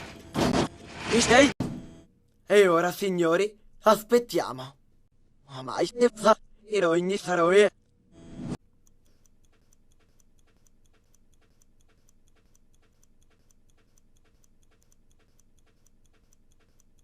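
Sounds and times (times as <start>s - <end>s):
clock ticking: 8.6s - 17.0s.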